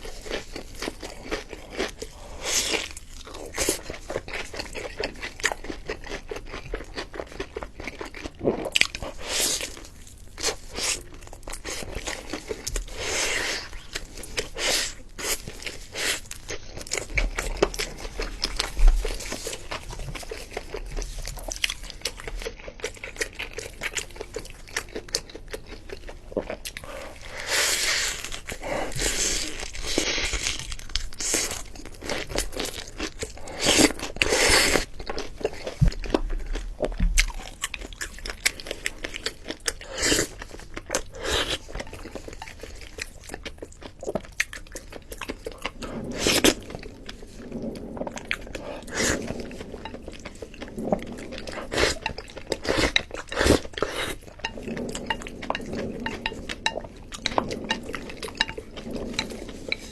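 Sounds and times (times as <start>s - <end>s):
person chewing crunchy food: 0.0s - 59.9s.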